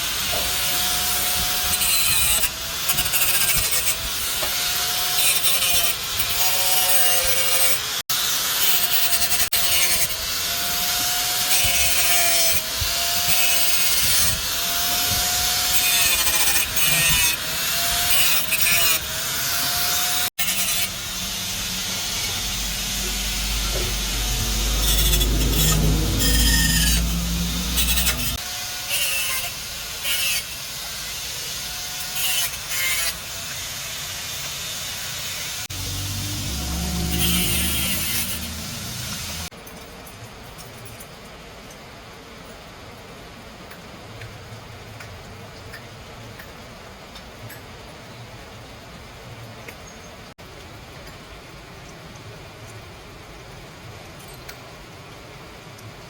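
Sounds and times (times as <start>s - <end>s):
squealing scraping strokes: 19.9s - 28.4s, 35.7s - 39.5s
low motor hum: 20.4s - 28.4s, 35.7s - 39.5s.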